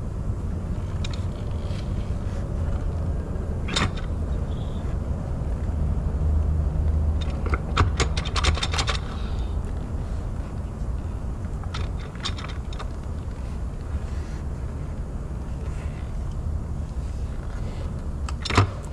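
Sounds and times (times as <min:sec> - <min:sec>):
car engine humming: 0:00.0 - 0:18.9.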